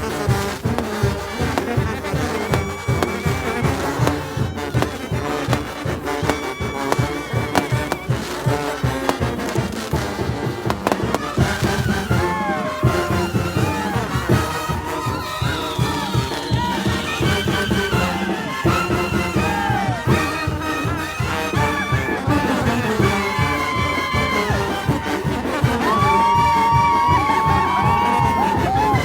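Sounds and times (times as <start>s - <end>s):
brass band playing: 0.0s - 29.0s.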